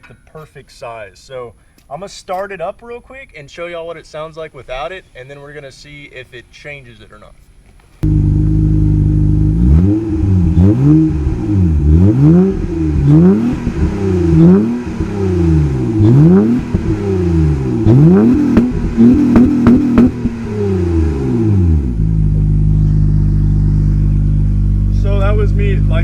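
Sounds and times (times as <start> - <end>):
car engine idling: 8.0 - 26.0
car engine revving: 8.0 - 26.0.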